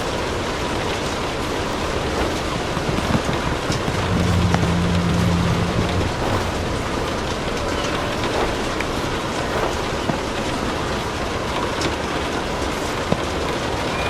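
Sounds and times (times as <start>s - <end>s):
fireplace fire crackling: 0.0s - 13.7s
steady rain: 0.0s - 14.0s
low hum: 1.2s - 9.5s.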